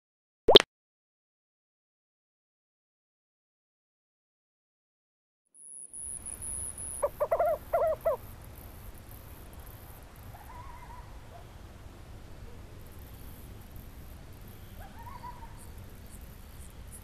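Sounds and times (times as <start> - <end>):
owl hooting: 6.8 - 8.3, 14.8 - 15.7.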